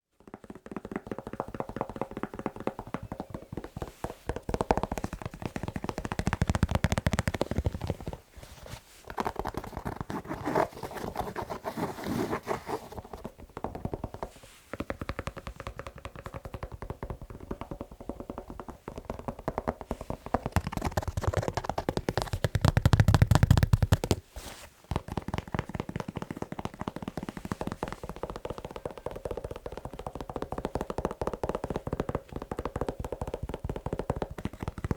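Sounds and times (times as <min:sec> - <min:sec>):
tapping and scratching on shoe: 0:00.2 - 0:34.9.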